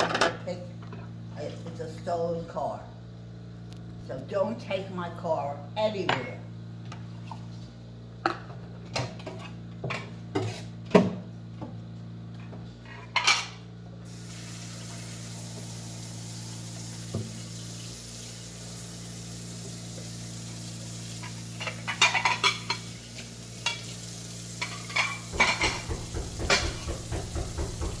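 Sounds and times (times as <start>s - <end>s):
knocks and clinks of hard objects: 24.6s - 28.0s.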